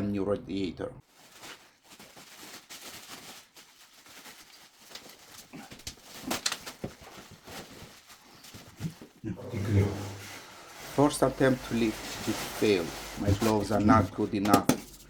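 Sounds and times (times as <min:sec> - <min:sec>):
gloved hands scraping radiator: 0:09.5 - 0:15.0.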